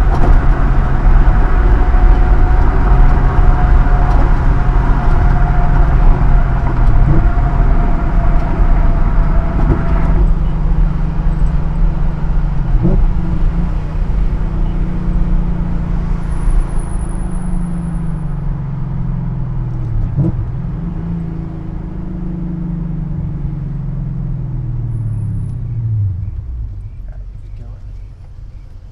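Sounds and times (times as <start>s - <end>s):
car engine driving: 0.0s - 28.9s.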